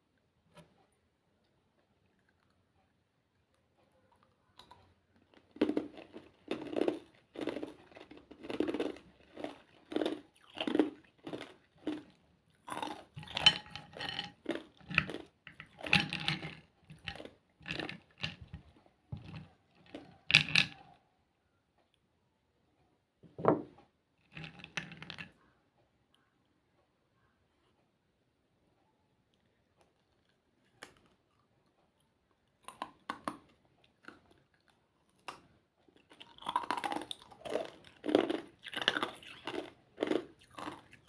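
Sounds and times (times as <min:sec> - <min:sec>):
person chewing ice: 0:02.1 - 0:20.9, 0:29.8 - 0:41.0.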